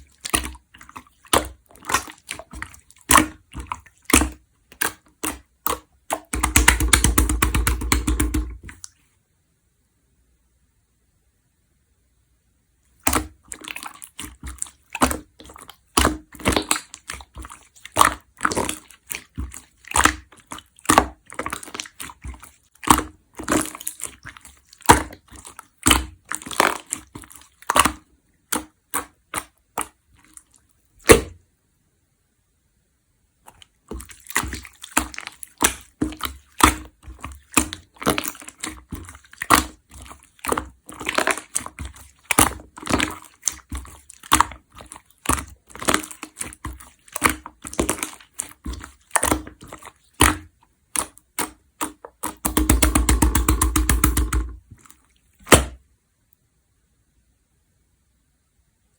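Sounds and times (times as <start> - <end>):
slime popping and clicking: 51.0 - 54.6.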